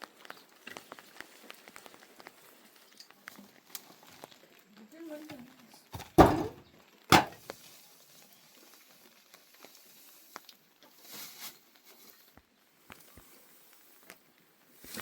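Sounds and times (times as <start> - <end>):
loud knocks: 6.0 - 7.4.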